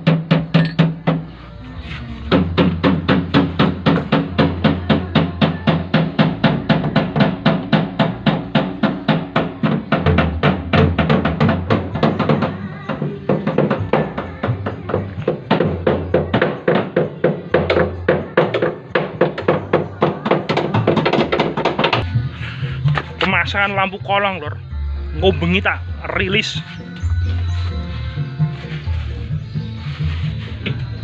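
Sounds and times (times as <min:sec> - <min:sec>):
bass line: 0:00.0 - 0:13.0, 0:21.2 - 0:31.0.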